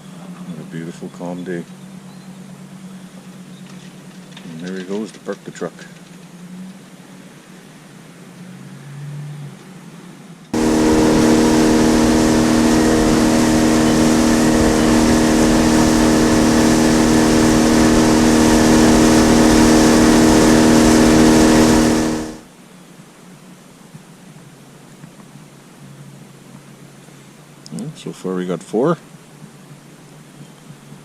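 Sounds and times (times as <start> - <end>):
boat motor running: 10.6 - 22.4
wind and water hiss: 10.6 - 22.4.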